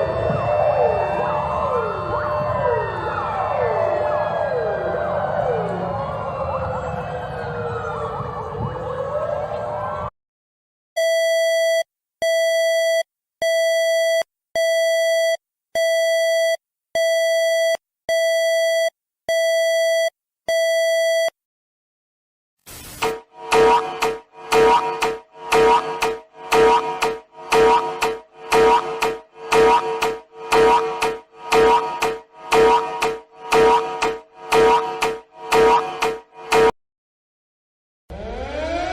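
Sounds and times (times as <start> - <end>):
sirens wailing: 0.0 - 10.1, 23.0 - 36.7, 38.1 - 38.9
electronic alert beeps: 23.0 - 36.7.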